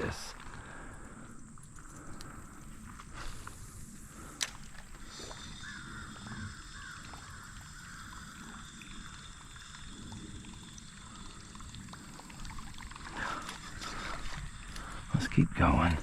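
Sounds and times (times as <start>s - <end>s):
bird calling: 0.0s - 15.5s.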